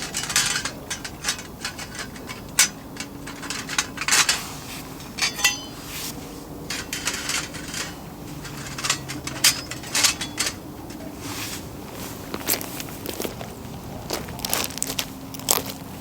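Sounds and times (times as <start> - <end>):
cookware and utensils clinking: 0.0 - 6.0, 6.7 - 11.2
faint steady hum: 0.0 - 16.0.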